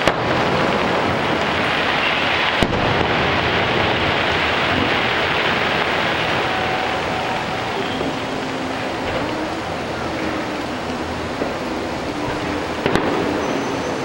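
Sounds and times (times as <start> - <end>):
sharp firework bang: 0.0 - 8.2, 12.2 - 14.0
rumble of firework bursts: 0.0 - 14.0.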